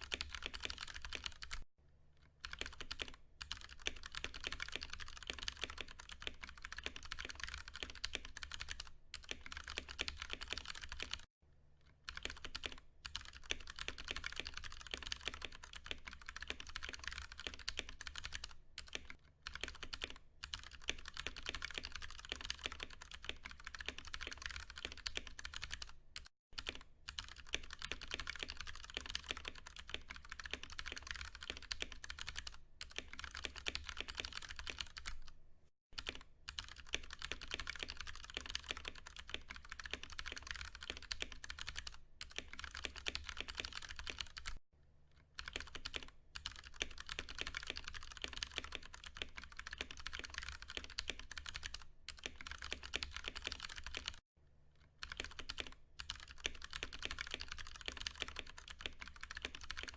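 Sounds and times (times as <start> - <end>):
mechanical keyboard typing: 0.0 - 1.6, 2.4 - 11.3, 12.1 - 35.4, 36.0 - 44.6, 45.4 - 54.2, 55.0 - 59.9.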